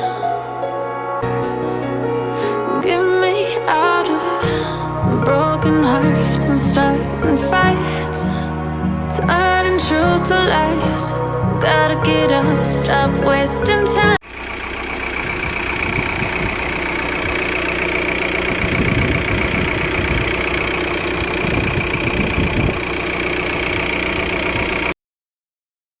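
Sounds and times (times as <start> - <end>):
diesel engine idling: 4.4 - 24.9.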